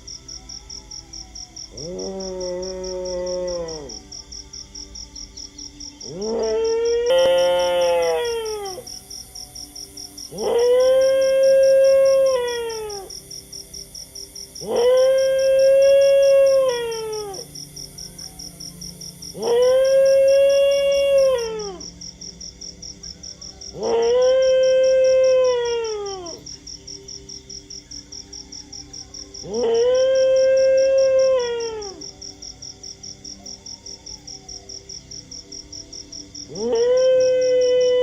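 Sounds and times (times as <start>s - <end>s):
dog howling: 0.7s - 4.0s, 6.0s - 9.0s, 10.3s - 13.2s, 14.6s - 22.0s, 23.5s - 26.5s, 29.3s - 32.2s, 36.5s - 38.0s.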